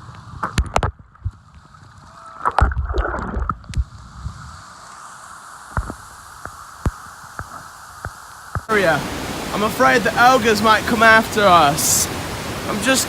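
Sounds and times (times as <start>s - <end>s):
river water rushing: 4.7s - 13.0s.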